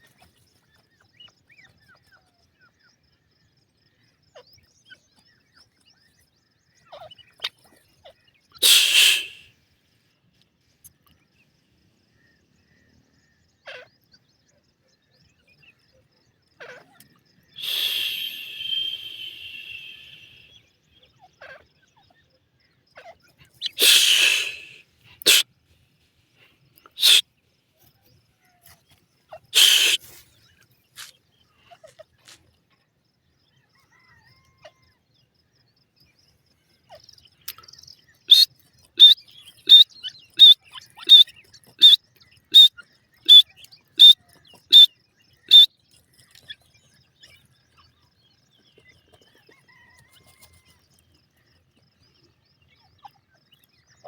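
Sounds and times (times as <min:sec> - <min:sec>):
bird calling short high notes: 0:08.6 - 0:09.5, 0:17.6 - 0:20.5, 0:23.6 - 0:25.4, 0:27.0 - 0:27.2, 0:29.6 - 0:30.1
snake hissing: 0:08.6 - 0:09.5, 0:17.6 - 0:20.5, 0:23.6 - 0:25.4, 0:27.0 - 0:27.2, 0:29.6 - 0:30.2.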